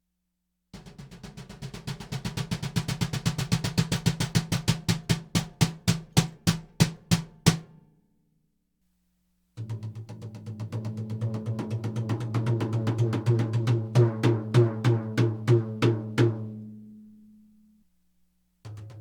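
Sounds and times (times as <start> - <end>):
drum roll on mesh head: 0.8 - 7.7, 9.6 - 16.5
another drum played: 9.6 - 16.6.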